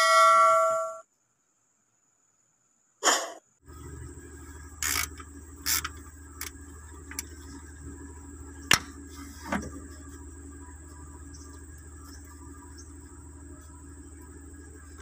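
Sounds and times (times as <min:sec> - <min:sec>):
faint high whine: 0:00.0 - 0:01.2, 0:03.6 - 0:15.0
low hum: 0:03.6 - 0:15.0.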